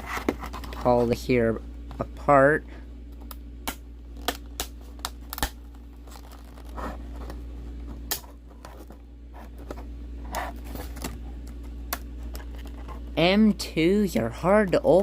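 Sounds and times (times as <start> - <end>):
packaging being pulled apart: 4.2 - 7.0.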